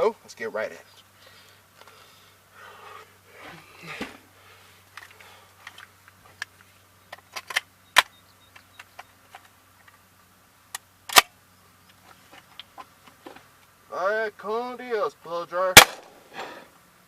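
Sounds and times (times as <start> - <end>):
gun handling clicks: 4.9 - 10.0, 10.7 - 11.3.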